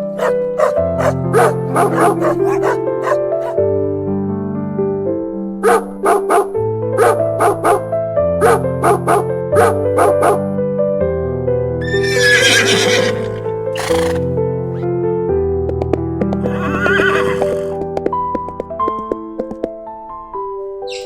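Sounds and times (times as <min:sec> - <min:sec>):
horse whinnying: 0:00.0 - 0:03.6, 0:11.8 - 0:14.4, 0:16.4 - 0:17.8.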